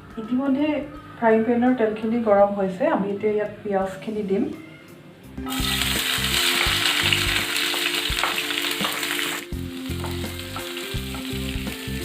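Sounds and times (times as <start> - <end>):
onions sizzling in hot oil: 5.5 - 12.0.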